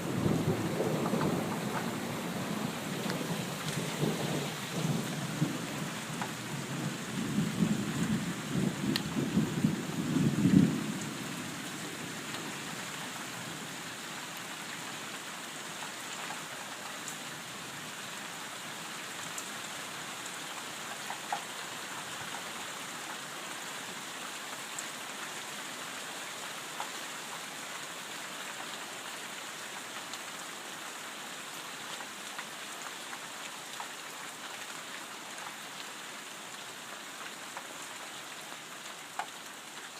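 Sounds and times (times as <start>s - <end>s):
thunder rumbling: 0.0s - 11.0s
steady rain: 0.0s - 39.9s.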